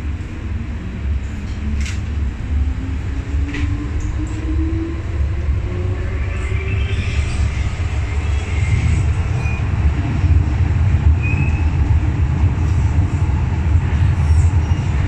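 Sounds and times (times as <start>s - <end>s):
train wheels rumbling on track: 0.0s - 15.0s.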